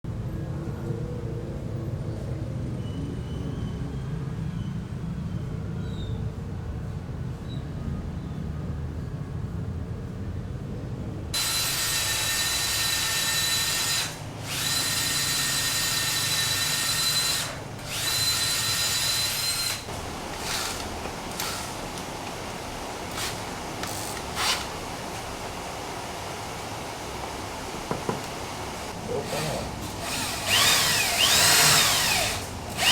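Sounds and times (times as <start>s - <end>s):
power tool whining: 11.4s - 22.0s, 23.1s - 24.9s, 28.9s - 32.9s.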